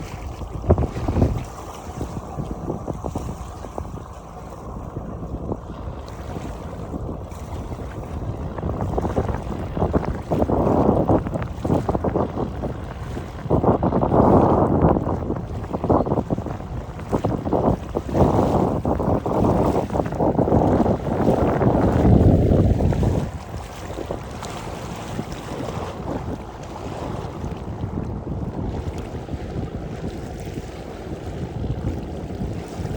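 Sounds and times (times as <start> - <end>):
wind buffeting microphone: 0.0 - 32.9.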